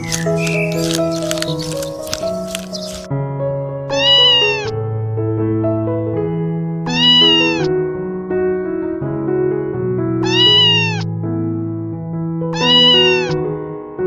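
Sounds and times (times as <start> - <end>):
cat meowing: 0.0 - 3.1, 3.9 - 4.8, 6.9 - 7.7, 10.2 - 11.1, 12.6 - 13.4.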